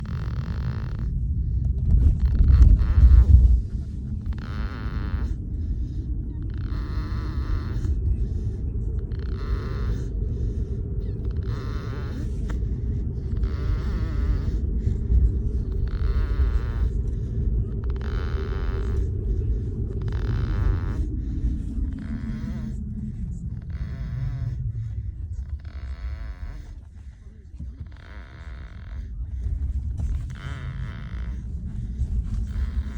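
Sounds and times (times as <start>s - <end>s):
steady low rumble: 0.0s - 32.9s
person snoring: 9.1s - 10.2s, 11.0s - 12.6s, 13.2s - 26.8s.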